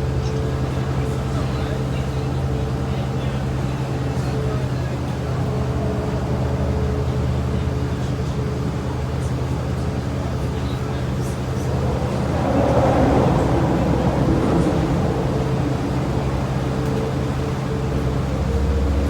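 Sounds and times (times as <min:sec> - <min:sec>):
boat engine droning: 0:00.0 - 0:19.0
noisy rush: 0:04.1 - 0:19.0.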